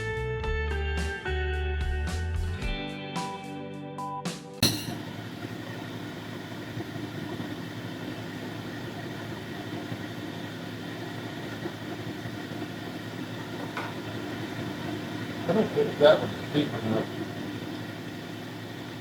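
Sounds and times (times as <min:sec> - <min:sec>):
grinding machine motor humming: 0:04.9 - 0:19.0.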